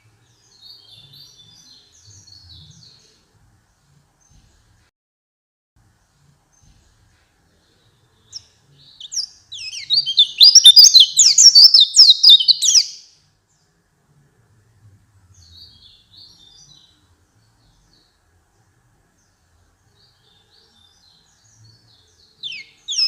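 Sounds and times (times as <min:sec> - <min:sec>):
soft bird chirps: 0:00.0 - 0:04.8, 0:05.8 - 0:13.8, 0:15.3 - 0:23.0
bird warbling song: 0:06.0 - 0:13.7, 0:19.2 - 0:23.0.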